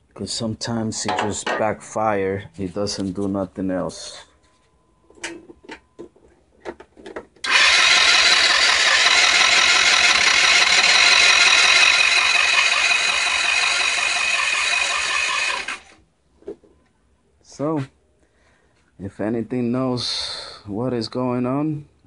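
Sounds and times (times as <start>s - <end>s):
scooter engine cranking: 7.4s - 16.0s.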